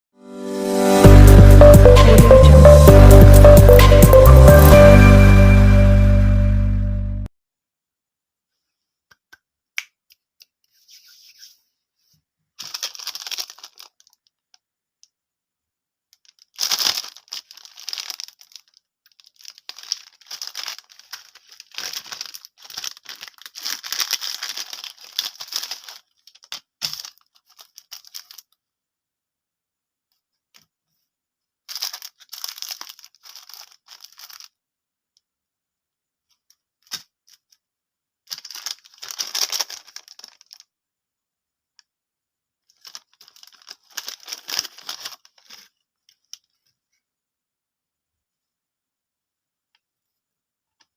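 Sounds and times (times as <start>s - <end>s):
plastic wrappers crinkling: 12.6s - 14.6s, 16.2s - 28.6s, 31.6s - 34.6s, 38.3s - 40.7s, 42.7s - 46.7s.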